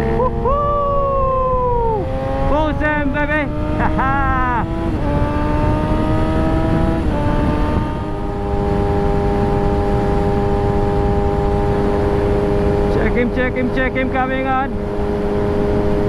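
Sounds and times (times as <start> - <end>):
motorcycle engine at speed: 0.0 - 16.0
wind noise: 0.0 - 16.0.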